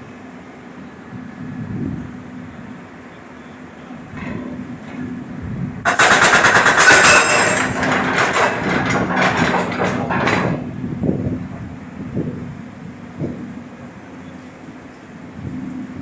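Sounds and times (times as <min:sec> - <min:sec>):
jackhammer hammering concrete: 0:05.9 - 0:10.7.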